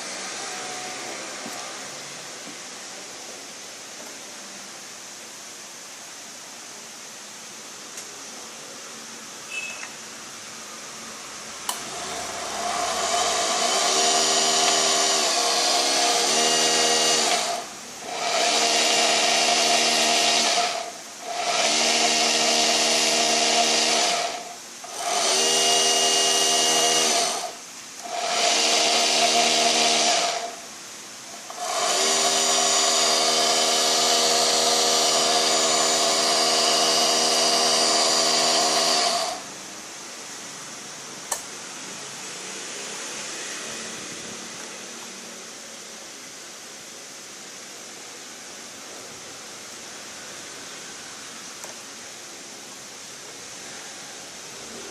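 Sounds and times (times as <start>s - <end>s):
electric motors whining: 11.7s - 30.6s, 31.5s - 39.4s.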